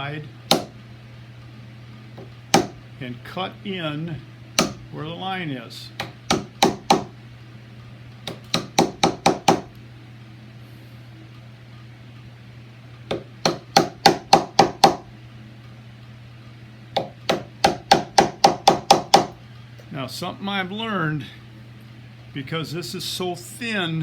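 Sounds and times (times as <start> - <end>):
mallet tapping wood chisel: 0.5 - 0.7, 2.2 - 2.8, 4.6 - 4.8, 6.0 - 7.1, 8.2 - 9.7, 13.1 - 15.1, 17.0 - 19.4.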